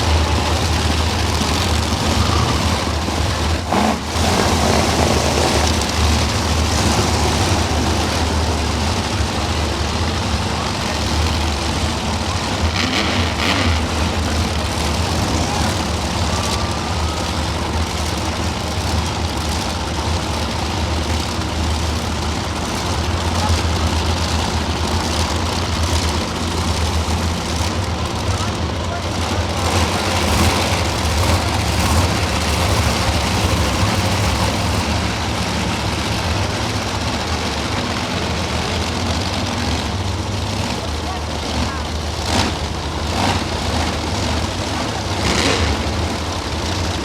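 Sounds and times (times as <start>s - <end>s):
truck engines rumbling: 0.0s - 47.0s.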